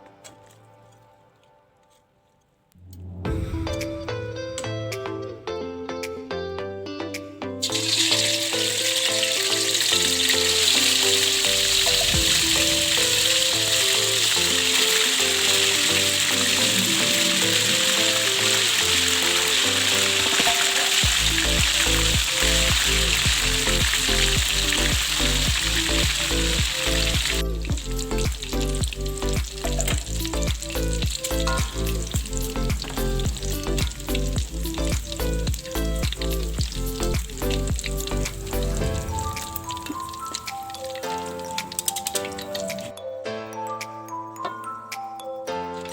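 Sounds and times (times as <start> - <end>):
background music with steady beat: 3.1 - 45.9
food sizzling in hot oil: 7.6 - 42.9.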